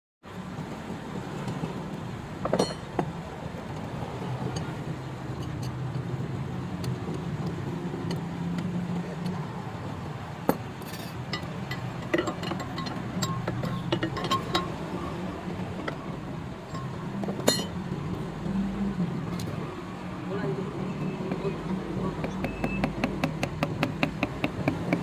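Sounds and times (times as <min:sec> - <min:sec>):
metal parts clinking: 0:10.8 - 0:14.8, 0:16.7 - 0:17.8.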